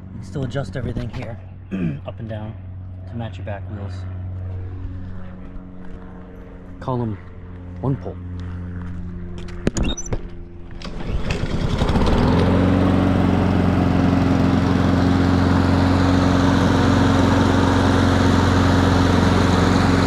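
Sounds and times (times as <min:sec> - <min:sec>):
lawn mower engine running: 0:09.4 - 0:20.0.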